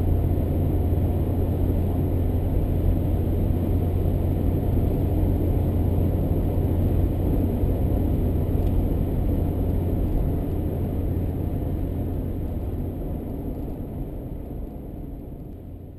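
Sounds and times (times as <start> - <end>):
car road and engine rumble: 0.0 - 15.9.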